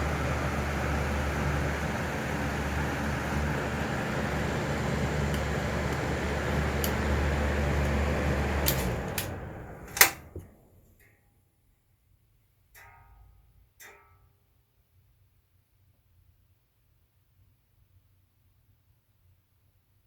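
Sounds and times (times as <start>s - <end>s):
exhaust fan running: 0.0s - 11.0s
fan winding down: 0.0s - 11.0s.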